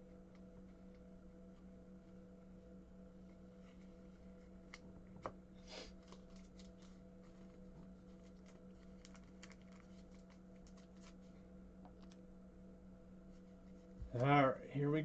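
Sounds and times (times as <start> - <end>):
steady low hum: 0.0 - 15.0
trading cards rustling and clicking: 3.6 - 11.3.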